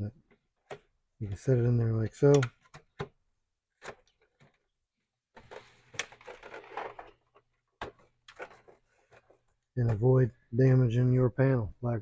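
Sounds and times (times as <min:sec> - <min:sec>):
hard plastic clicking: 0:02.2 - 0:03.2
plastic rubbing and rustling: 0:05.4 - 0:10.1.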